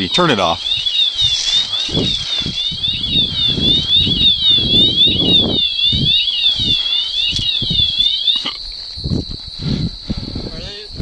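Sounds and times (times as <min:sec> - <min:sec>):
warbling electronic alarm: 0:00.0 - 0:08.6
steady high whine: 0:00.0 - 0:09.8.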